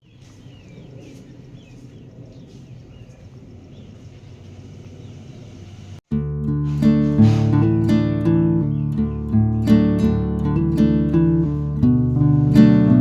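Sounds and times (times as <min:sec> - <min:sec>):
falling bird chirps: 0:00.0 - 0:06.0
low outdoor rumble: 0:00.0 - 0:13.0
strummed acoustic guitar music: 0:06.1 - 0:13.0.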